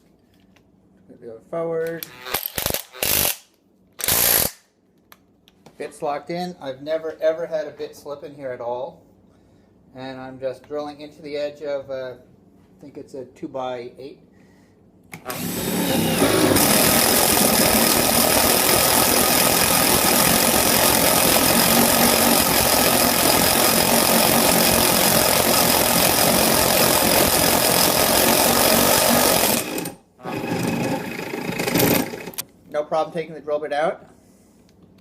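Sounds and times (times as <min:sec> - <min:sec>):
impact driver boring into wood: 0:02.0 - 0:03.4, 0:04.0 - 0:04.6, 0:15.2 - 0:32.4.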